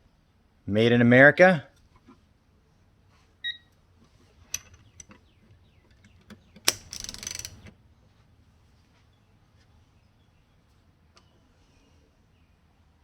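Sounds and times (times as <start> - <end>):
ratchet handling clicks and knocks: 4.4 - 5.3, 5.9 - 7.7
rapid ratchet pawl clicking: 6.7 - 7.6.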